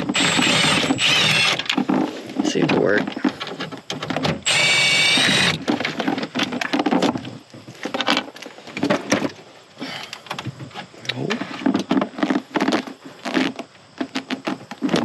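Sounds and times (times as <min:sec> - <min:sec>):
power tool motor whining: 0:00.0 - 0:01.8, 0:04.4 - 0:05.8.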